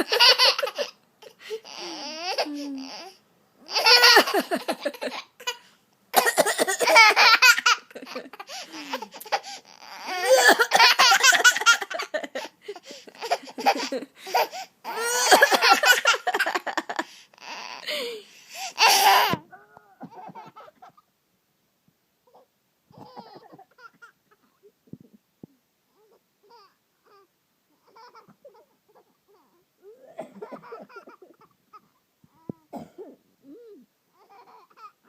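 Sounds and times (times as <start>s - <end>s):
child's soft voice sounds: 1.8s - 3.2s, 19.4s - 20.1s
young child laughing: 6.5s - 9.4s, 10.0s - 17.0s.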